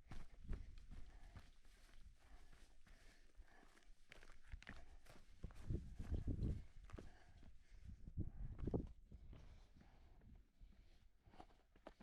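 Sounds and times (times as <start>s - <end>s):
faint footsteps on trail: 0.1s - 7.8s.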